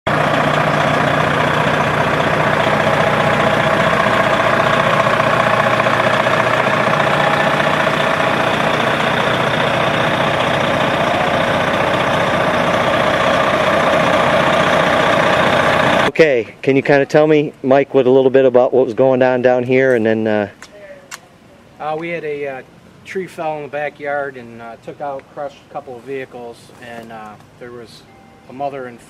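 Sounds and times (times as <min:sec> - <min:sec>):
engine idling: 0:00.1 - 0:16.4.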